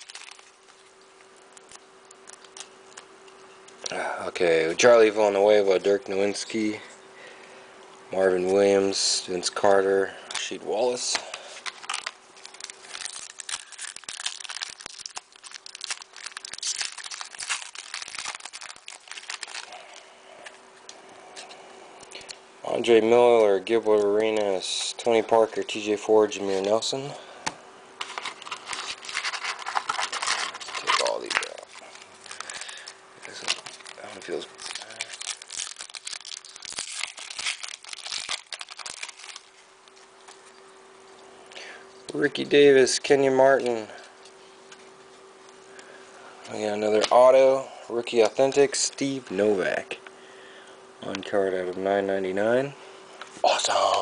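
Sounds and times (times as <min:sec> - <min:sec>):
foil wrapper crinkling and tearing: 0:00.0 - 0:03.1, 0:10.4 - 0:20.5, 0:28.0 - 0:40.6
cards being handled: 0:10.3 - 0:20.5, 0:28.0 - 0:40.6.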